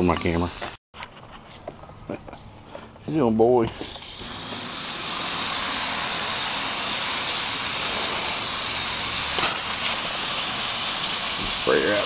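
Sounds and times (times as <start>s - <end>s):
hissing water spray: 3.8s - 12.0s.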